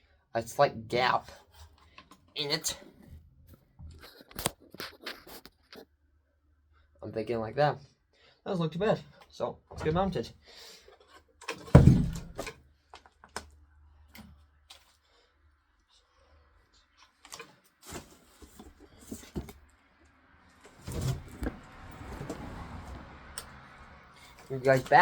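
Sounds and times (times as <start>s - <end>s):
box knocking against wall: 11.7s - 12.5s
scraping and rustling: 17.1s - 19.7s, 20.5s - 23.1s, 24.2s - 25.0s.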